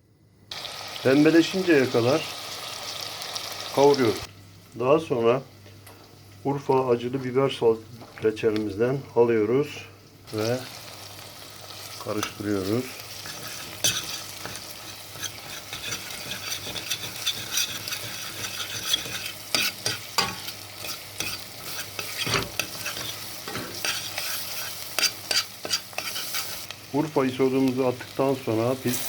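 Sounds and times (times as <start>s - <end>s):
fat and onion sizzling: 0.5s - 29.0s
spoon scraping and knocking pot: 12.1s - 12.5s, 13.1s - 26.6s.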